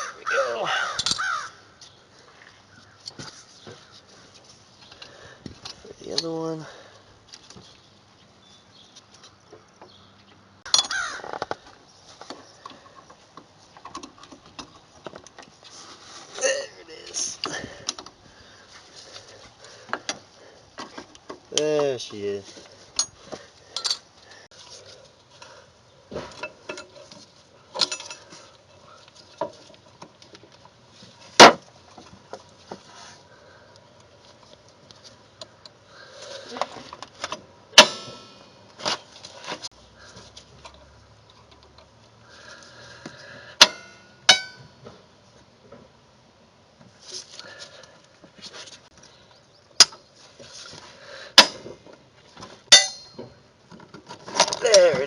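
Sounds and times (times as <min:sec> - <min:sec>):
metal brake parts clinking: 0:01.0 - 0:01.3, 0:10.7 - 0:11.1, 0:22.9 - 0:24.1, 0:27.7 - 0:28.4, 0:43.6 - 0:44.8, 0:52.7 - 0:53.3
light scraping and rattling: 0:01.0 - 0:07.9, 0:10.7 - 0:45.9, 0:46.8 - 0:55.0
sharp metallic clack: 0:37.8 - 0:38.5, 0:43.6 - 0:44.7, 0:52.7 - 0:53.3.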